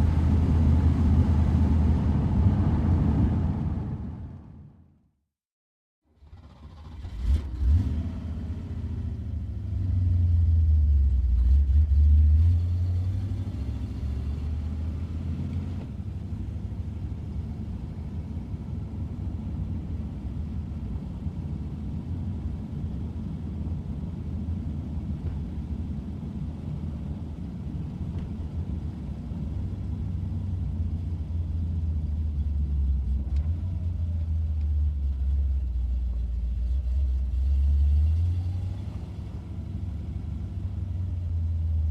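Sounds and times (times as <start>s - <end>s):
car engine starting and rumbling: 0.0s - 4.9s, 6.1s - 41.9s.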